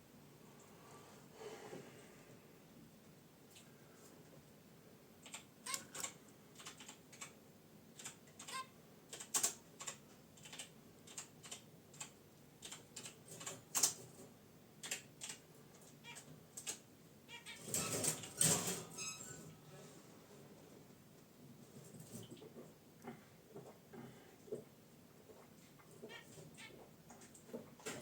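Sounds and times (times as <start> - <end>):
finches ticking and clicking: 8.0 - 13.9.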